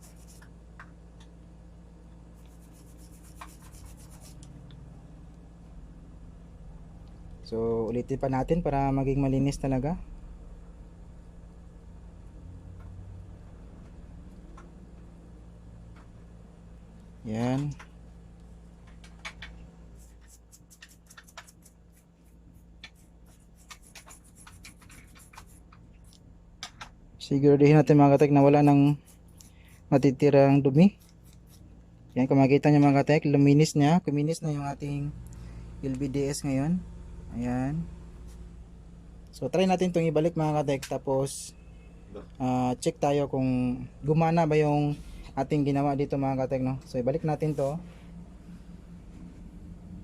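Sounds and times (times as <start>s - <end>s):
scratchy scrubbing strokes: 0.0s - 0.4s, 2.4s - 4.5s, 20.0s - 25.7s.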